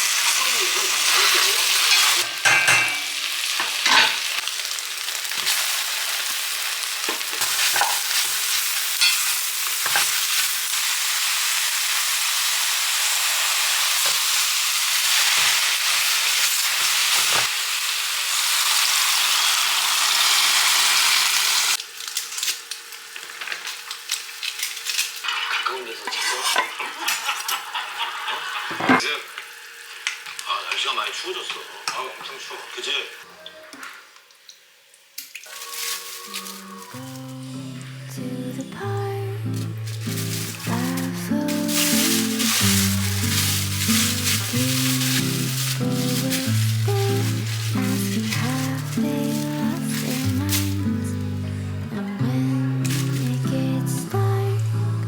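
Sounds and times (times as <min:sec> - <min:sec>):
food sizzling in a pot: 0:00.0 - 0:55.0.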